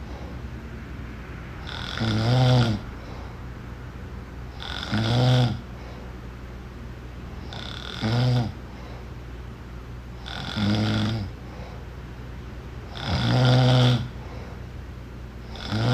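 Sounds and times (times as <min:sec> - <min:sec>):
quiet breathing: 0:00.0 - 0:06.4, 0:07.3 - 0:09.5, 0:10.2 - 0:15.9
low snores: 0:01.6 - 0:03.3, 0:04.5 - 0:05.8, 0:07.4 - 0:08.6, 0:10.2 - 0:11.4, 0:12.9 - 0:14.2, 0:15.5 - 0:15.9.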